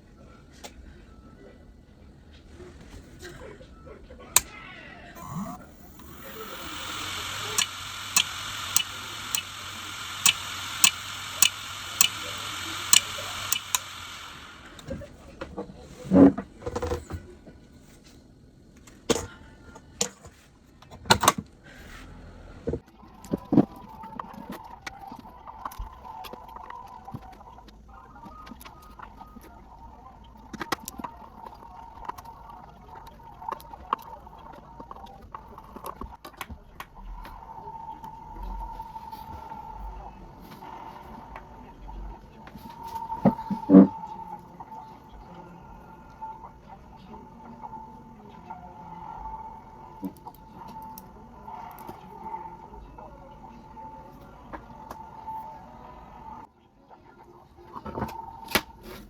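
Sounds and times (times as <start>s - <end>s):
hard drive whirring: 5.1s - 15.2s
hard drive head clicking: 5.2s - 14.9s.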